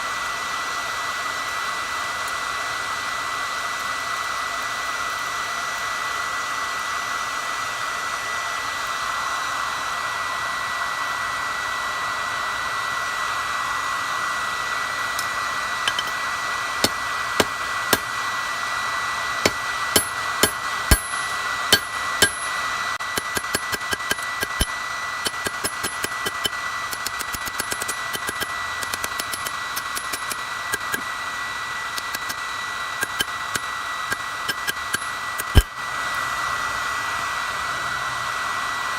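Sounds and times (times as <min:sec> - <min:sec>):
forge blower whining: 0:00.0 - 0:38.9
hammer striking steel on anvil: 0:15.9 - 0:16.2, 0:16.8 - 0:18.2, 0:19.4 - 0:31.1, 0:32.0 - 0:32.4, 0:33.0 - 0:35.7.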